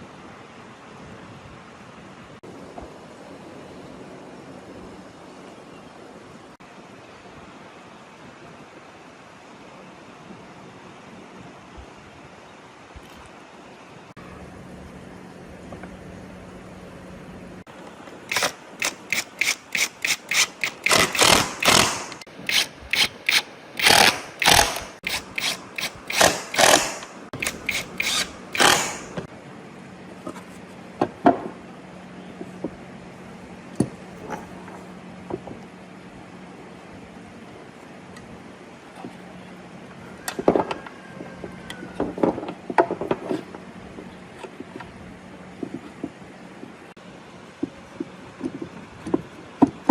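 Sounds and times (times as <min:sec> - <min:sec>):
steady low hum: 0:14.2 - 0:40.0
mechanism short strokes: 0:18.3 - 0:29.3.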